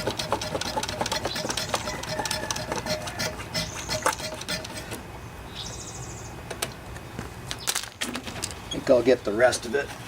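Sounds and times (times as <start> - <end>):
hand pump clicking: 0.0 - 5.0
bird trill: 5.5 - 6.4.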